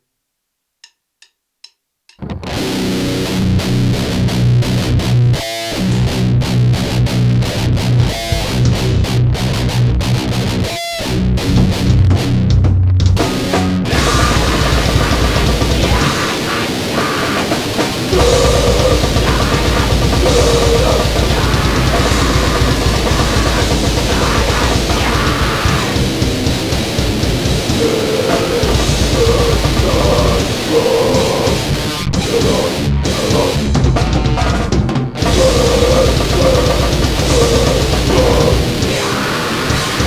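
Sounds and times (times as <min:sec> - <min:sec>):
noise band playing: 0:02.2 - 0:40.0.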